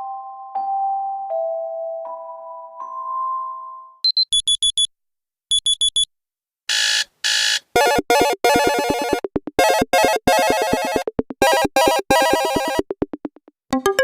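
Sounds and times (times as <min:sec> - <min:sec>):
quick high alarm beeps: 0:04.0 - 0:04.9, 0:05.5 - 0:06.1
harsh alarm pulsing buzz: 0:06.7 - 0:09.3.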